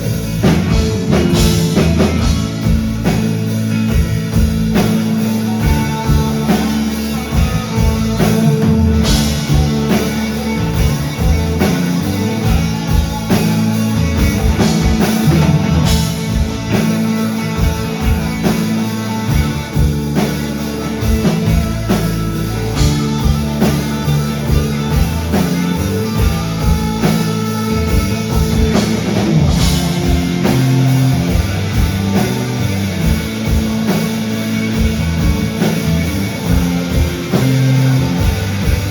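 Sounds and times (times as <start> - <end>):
live rock band playing: 0.0 - 38.9.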